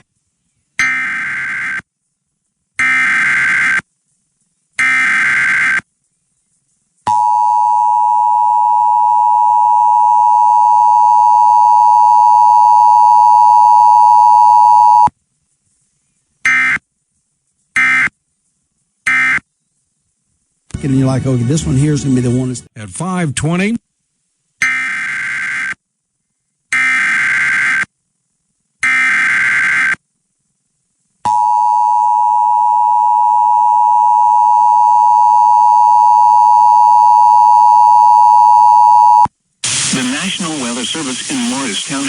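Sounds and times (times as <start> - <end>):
digital data bursts: 0.8 - 1.8, 2.8 - 3.8, 4.8 - 5.8, 38.6 - 42.0
two-tone attention signal: 7.1 - 15.1, 31.3 - 39.3.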